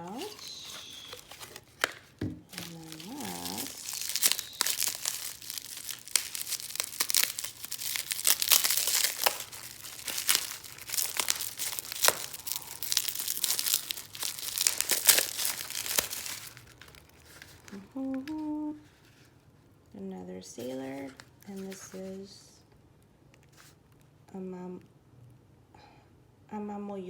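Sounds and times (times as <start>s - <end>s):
packaging crackling and rustling: 0.0s - 19.3s, 20.6s - 22.3s.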